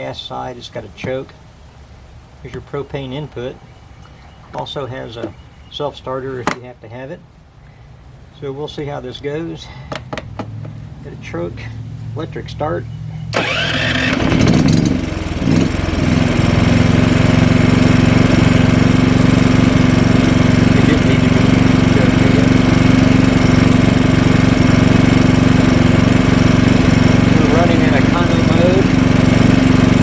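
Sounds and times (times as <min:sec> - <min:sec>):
generator engine starting and running: 0:12.9 - 0:30.0.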